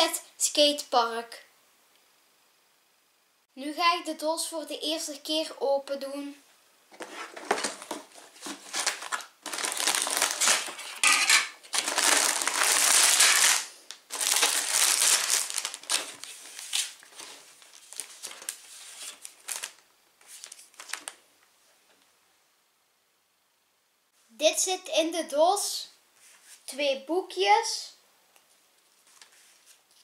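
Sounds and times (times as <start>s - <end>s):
cardboard box tearing and crinkling: 7.3s - 11.0s, 11.7s - 17.3s.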